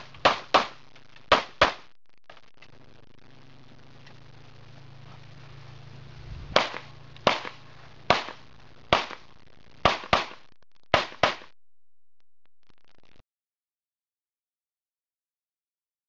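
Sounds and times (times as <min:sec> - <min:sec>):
pistol shots with echo: 0:06.6 - 0:09.2, 0:09.8 - 0:11.5.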